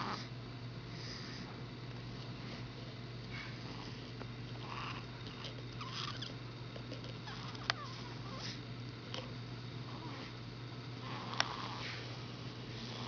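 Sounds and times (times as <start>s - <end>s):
steady low hum: 0.0s - 13.0s
person snoring: 11.0s - 12.0s, 12.7s - 13.0s.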